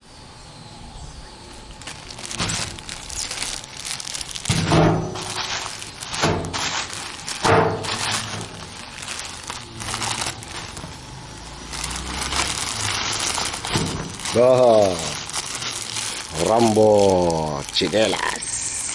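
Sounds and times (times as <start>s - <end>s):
packaging crinkling and rustling: 1.5s - 18.9s.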